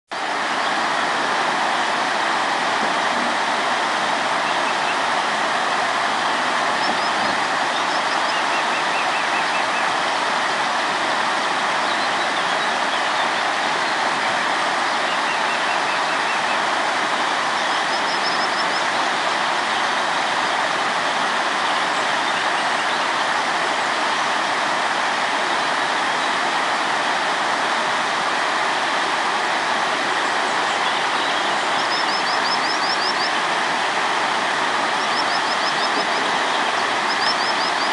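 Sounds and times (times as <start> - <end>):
river water rushing over rocks: 0.1 - 37.9
faint bird chirps: 17.6 - 18.9, 30.7 - 33.4, 35.0 - 37.9.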